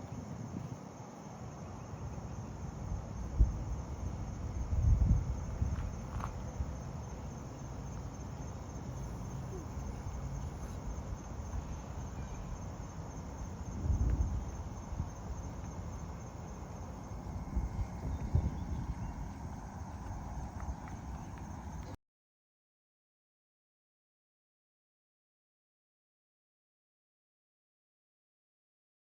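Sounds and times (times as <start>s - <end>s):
insects pulsing chorus: 0.0s - 22.0s
low rumbling noise: 2.8s - 22.0s.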